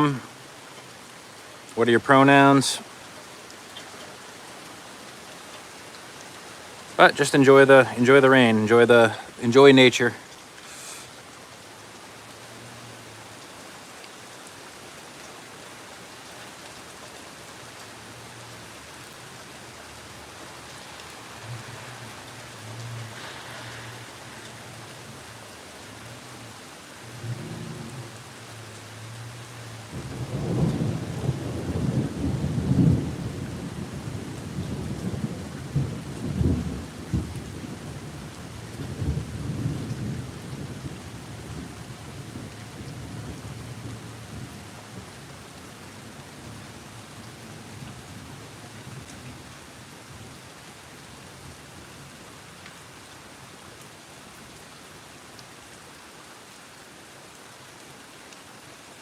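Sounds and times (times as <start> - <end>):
steady rain falling: 0.0 - 59.0
thunder rumbling: 27.1 - 28.2, 29.9 - 38.0.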